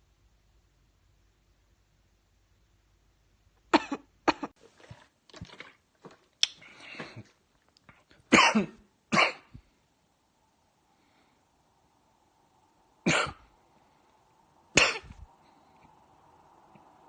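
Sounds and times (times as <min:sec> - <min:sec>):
person coughing: 0:03.7 - 0:04.5, 0:08.3 - 0:09.6, 0:14.8 - 0:15.2.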